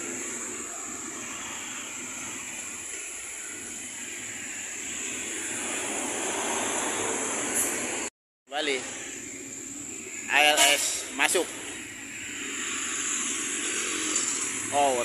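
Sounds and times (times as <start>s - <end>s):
road traffic passing: 0.0s - 8.1s, 8.7s - 15.0s.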